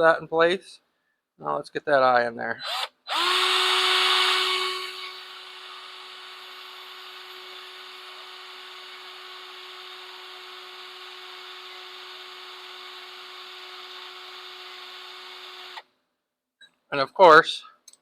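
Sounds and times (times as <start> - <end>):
electric drill whirring: 2.6 - 15.9.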